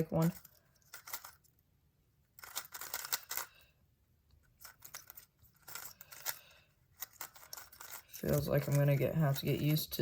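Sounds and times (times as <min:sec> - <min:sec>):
plastic puzzle cube clicking: 0:00.3 - 0:01.6, 0:02.4 - 0:03.6, 0:04.6 - 0:08.8.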